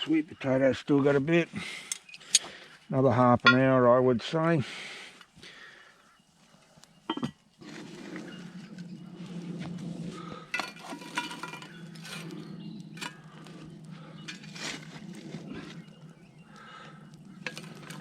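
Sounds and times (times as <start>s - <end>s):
metal cookware clanking: 7.1s - 7.4s, 10.5s - 12.3s, 17.4s - 18.0s
low hum: 7.2s - 18.0s.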